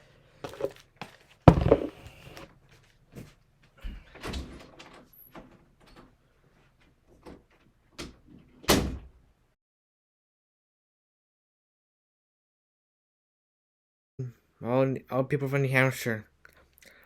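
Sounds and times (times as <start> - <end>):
household knocks and thuds: 1.5 - 2.2.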